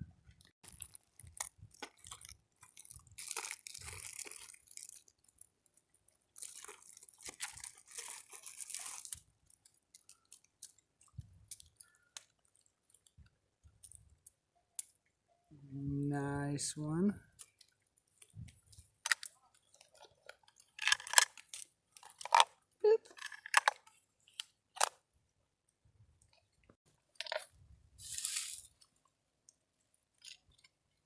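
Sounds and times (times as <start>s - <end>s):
crinkling and rustling: 0.2s - 15.1s, 17.3s - 25.0s.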